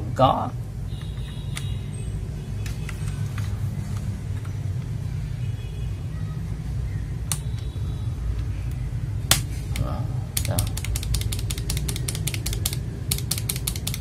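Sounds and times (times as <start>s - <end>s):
keyboard switch clicks: 7.3s - 7.6s, 9.3s - 14.0s.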